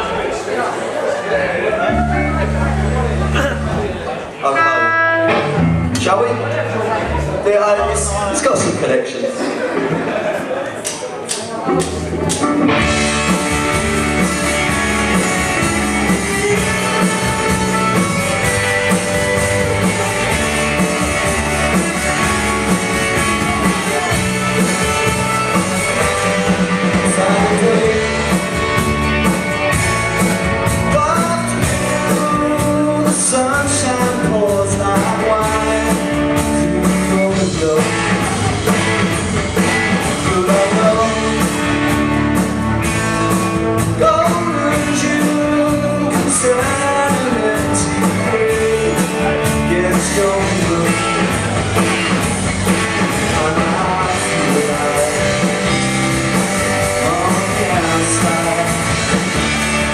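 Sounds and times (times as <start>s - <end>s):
electric guitars: 1.6s - 8.8s, 10.8s - 59.9s
steady drum beat: 11.8s - 59.9s
lead singer singing: 13.1s - 28.6s, 30.7s - 38.8s, 39.6s - 42.1s, 43.6s - 59.9s.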